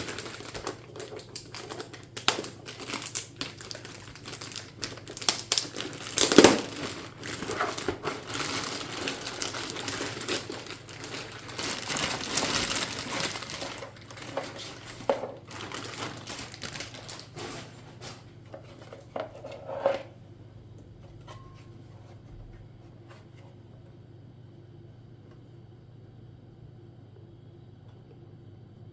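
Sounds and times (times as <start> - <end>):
packaging crinkling and rustling: 0.0 - 20.1.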